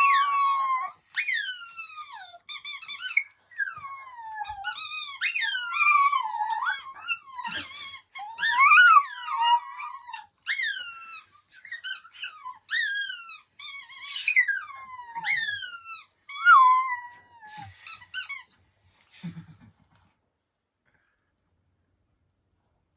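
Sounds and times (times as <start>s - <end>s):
puppy howling: 0.0s - 2.5s, 3.1s - 13.0s, 14.1s - 17.7s.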